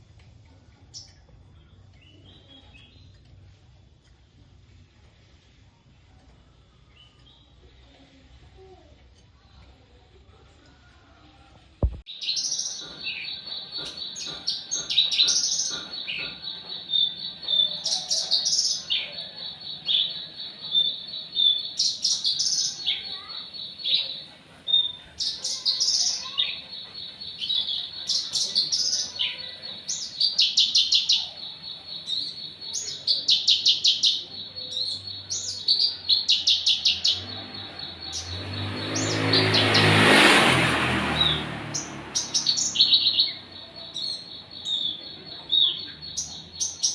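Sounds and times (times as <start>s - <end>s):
small bird chirping and trilling: 12.1s - 39.9s, 41.2s - 46.9s.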